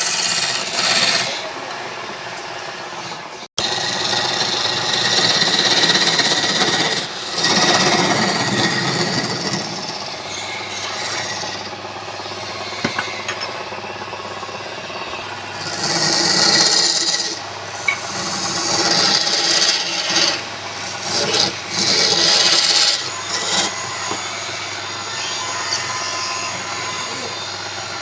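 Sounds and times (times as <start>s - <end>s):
tool scraping wood: 0.0s - 1.8s, 3.0s - 13.8s, 15.0s - 24.6s
steady machine hum: 0.0s - 28.0s.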